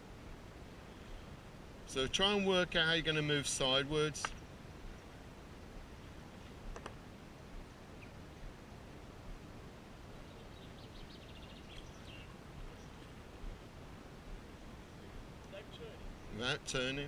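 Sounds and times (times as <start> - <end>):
outdoor background noise: 0.0 - 17.0
small bird chirping: 8.0 - 8.2, 10.2 - 13.1.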